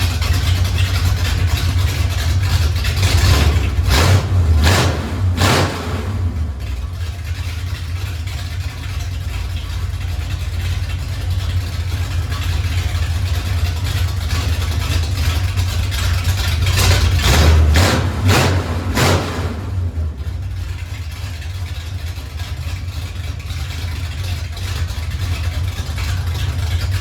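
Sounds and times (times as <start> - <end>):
engine droning: 0.0 - 27.0
engine revving bursts: 3.0 - 7.0, 16.8 - 20.9.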